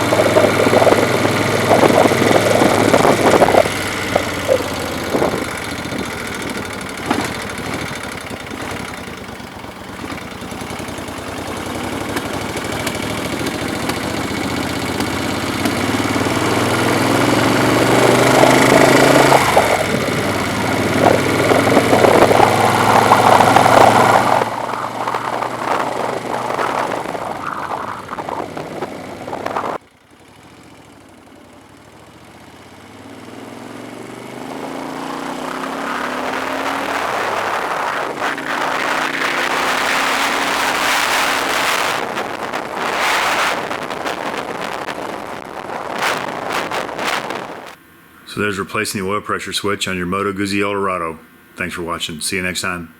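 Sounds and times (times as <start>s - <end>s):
wind rush on microphone: 0.0s - 8.8s, 11.8s - 29.8s, 34.5s - 47.8s
motorcycle engine running: 0.0s - 48.2s.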